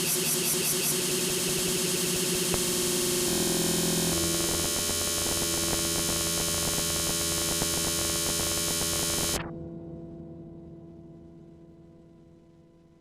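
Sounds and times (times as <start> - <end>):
buzzing synth drone: 0.0 - 9.5.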